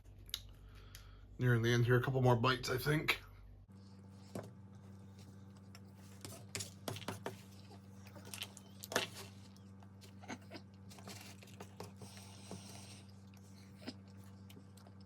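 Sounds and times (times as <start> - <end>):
steady low hum: 0.0 - 15.0
person chewing food: 3.8 - 15.0.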